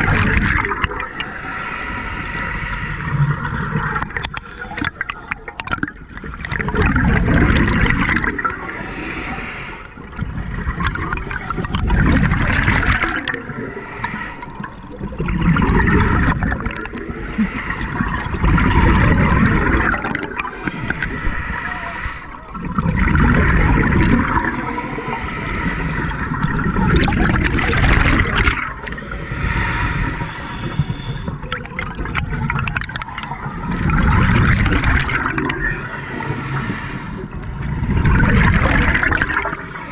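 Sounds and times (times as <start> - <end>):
bubbling regulator exhalations: 0.0 - 2.0, 2.9 - 39.9
regulator inhalations: 1.0 - 3.8, 8.3 - 10.2, 13.3 - 15.0, 16.8 - 22.8, 23.7 - 27.3, 28.9 - 31.6, 35.6 - 37.6, 39.3 - 39.9.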